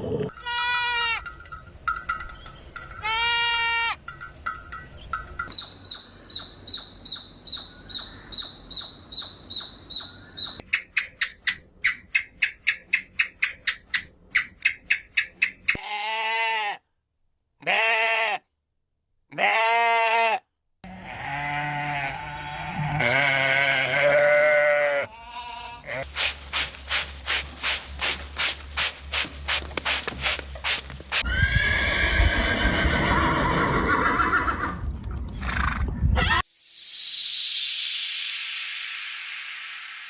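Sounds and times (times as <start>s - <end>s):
farm animals calling: 0.3s - 1.5s, 2.2s - 16.8s, 19.3s - 26.1s
regular pulsing beats: 0.3s - 3.3s, 4.0s - 11.4s, 36.5s - 40.0s.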